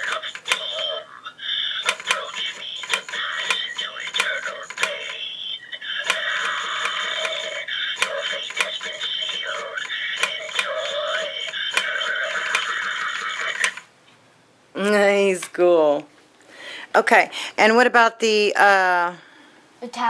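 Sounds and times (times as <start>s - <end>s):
sharp clicks: 0.0s - 0.8s, 1.8s - 5.3s, 6.0s - 13.9s
tinny electronic soundtrack from speaker: 0.0s - 13.9s.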